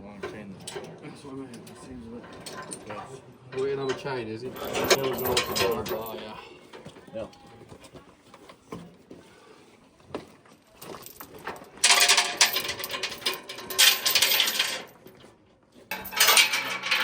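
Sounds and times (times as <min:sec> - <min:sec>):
heavy chain rattling and clinking: 0:01.6 - 0:06.4, 0:10.7 - 0:15.2, 0:15.9 - 0:17.0.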